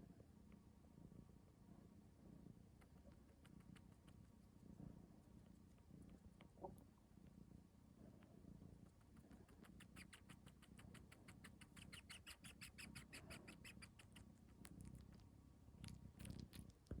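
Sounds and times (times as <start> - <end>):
cat purring: 0.9 - 17.0
cat wet sucking clicks: 8.8 - 17.0.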